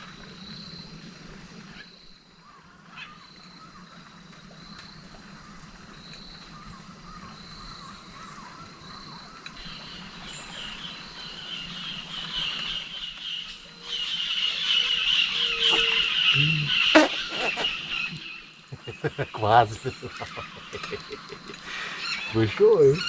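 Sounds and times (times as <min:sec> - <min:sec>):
chattering animal chorus: 0:14.5 - 0:23.0
wild animals calling: 0:14.6 - 0:23.0
high animal calls: 0:14.9 - 0:23.0.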